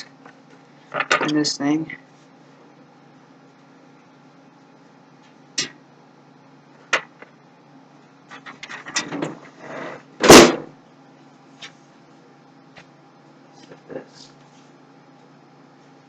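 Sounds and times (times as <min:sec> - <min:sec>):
loud thud: 0:10.2 - 0:10.7.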